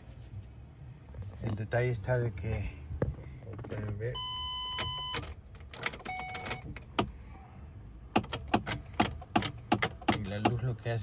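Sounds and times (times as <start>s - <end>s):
dashboard warning chime: 4.2s - 5.3s, 6.0s - 6.7s
ignition key clicks and jangling: 4.7s - 7.2s, 8.1s - 10.7s.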